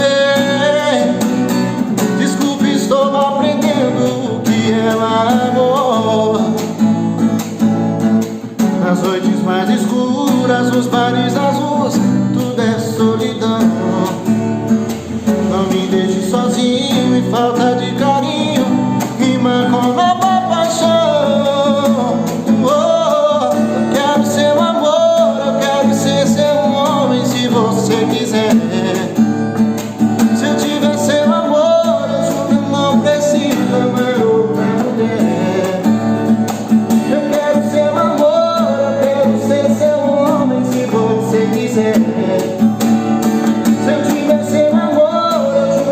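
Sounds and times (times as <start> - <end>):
person singing: 0.0 - 6.8, 15.0 - 29.2, 30.2 - 42.8, 43.6 - 45.9
acoustic guitar: 0.0 - 45.9.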